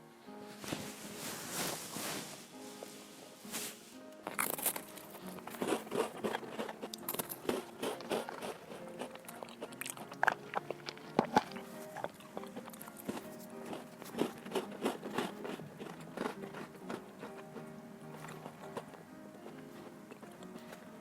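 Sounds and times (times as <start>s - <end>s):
chewing crisp biscuit: 4.2s - 21.0s.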